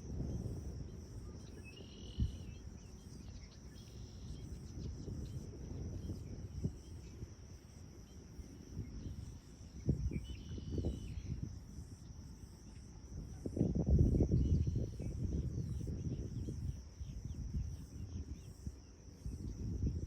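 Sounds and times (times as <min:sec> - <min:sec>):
high insect drone: 0:00.0 - 0:20.0
bird chirp: 0:01.4 - 0:07.0.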